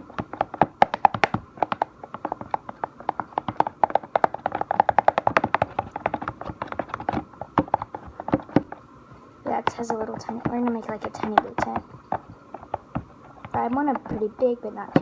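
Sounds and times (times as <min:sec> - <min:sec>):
stirring stick clacking on plastic: 0:00.0 - 0:08.8, 0:09.5 - 0:15.0.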